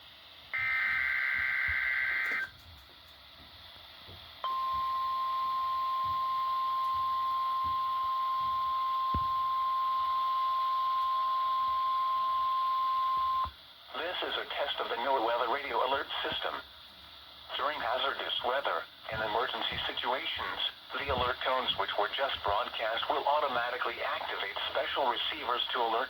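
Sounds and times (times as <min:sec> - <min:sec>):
harsh two-tone data screech: 0:00.6 - 0:02.5
steady warning alarm tone: 0:00.6 - 0:02.5, 0:04.4 - 0:13.5
radio hiss: 0:13.9 - 0:26.0.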